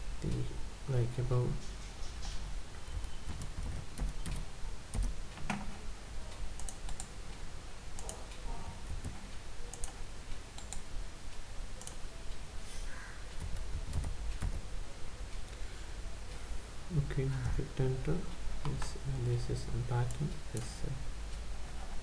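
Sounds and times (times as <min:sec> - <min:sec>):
typing on a keyboard: 0:02.9 - 0:05.6, 0:13.4 - 0:14.7.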